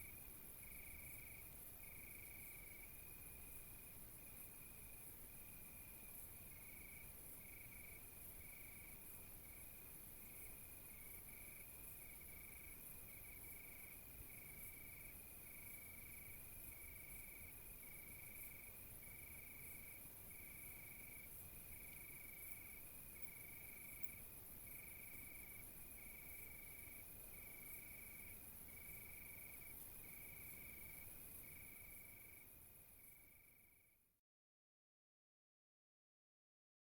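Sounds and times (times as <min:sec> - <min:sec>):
faint insect chirping: 0:00.0 - 0:34.2.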